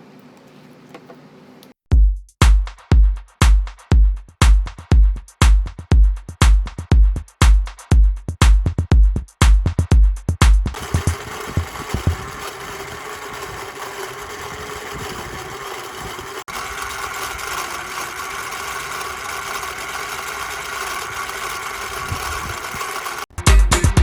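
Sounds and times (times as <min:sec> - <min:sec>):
small electric motor whirring: 0:10.8 - 0:23.3.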